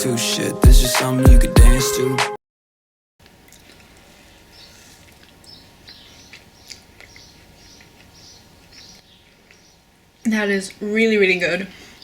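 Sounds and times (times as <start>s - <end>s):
birds chirping: 5.4s - 12.0s.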